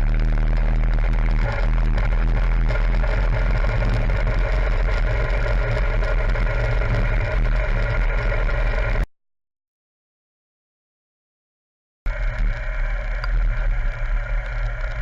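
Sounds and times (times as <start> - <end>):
motorcycle engine running: 0.0 - 9.1, 12.1 - 15.0.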